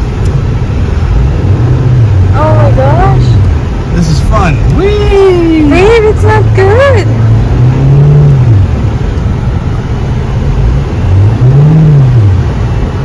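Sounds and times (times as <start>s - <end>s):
car engine revving: 0.0s - 13.0s
steady rushing noise: 0.0s - 13.0s.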